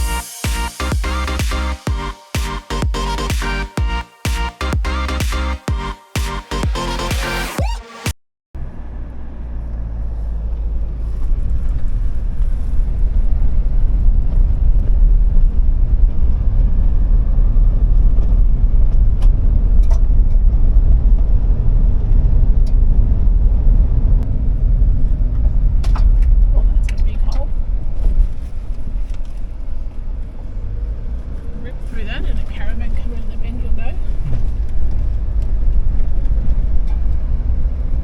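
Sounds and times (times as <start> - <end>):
vehicle engine and road noise: 8.6 - 38.0.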